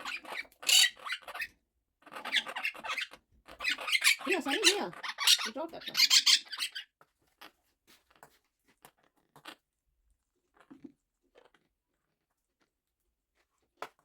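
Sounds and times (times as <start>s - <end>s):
parrot chewing food crunches: 7.2s - 14.0s.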